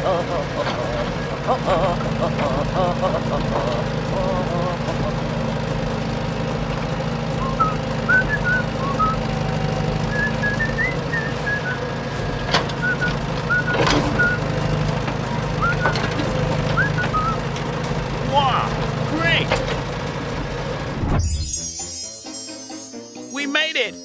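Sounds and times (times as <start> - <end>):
low engine hum: 0.0 - 21.5
high whistled chirps: 7.4 - 9.2, 10.1 - 11.9, 12.8 - 14.4, 15.6 - 15.9, 16.8 - 17.4.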